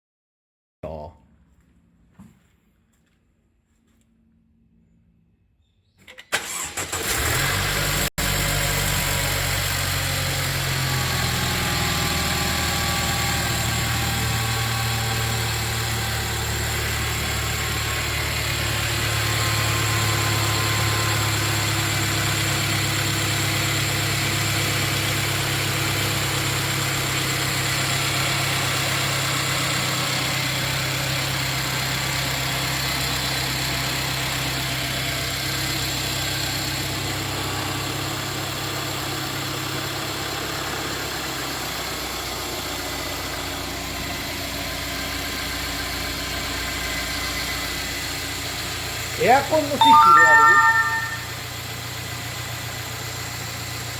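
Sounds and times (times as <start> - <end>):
car engine cranking and starting: 6.0 - 23.3.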